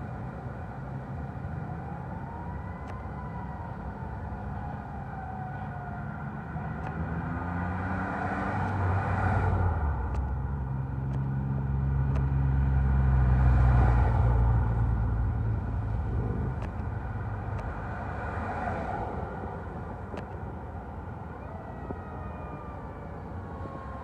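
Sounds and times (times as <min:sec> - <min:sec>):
diesel truck engine accelerating: 0:06.3 - 0:21.4.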